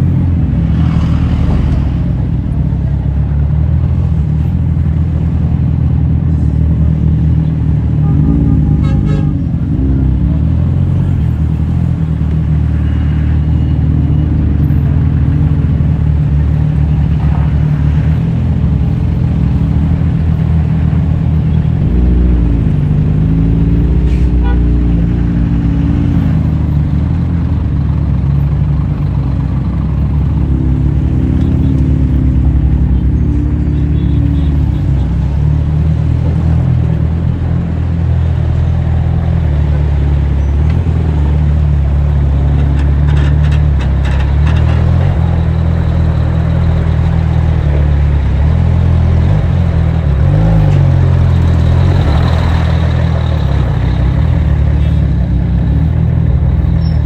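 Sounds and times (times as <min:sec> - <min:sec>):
motorcycle engine revving: 0:07.4 - 0:57.0
horn toot: 0:08.0 - 0:09.8, 0:24.0 - 0:25.0.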